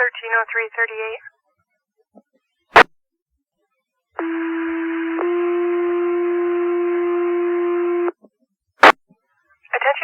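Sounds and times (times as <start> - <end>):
radio hiss: 9.6 - 10.0.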